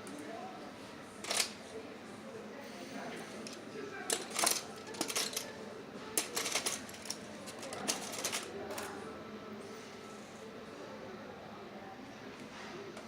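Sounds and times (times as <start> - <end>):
small tools clicking and tapping: 1.2 - 1.5, 3.4 - 5.5, 6.2 - 8.9.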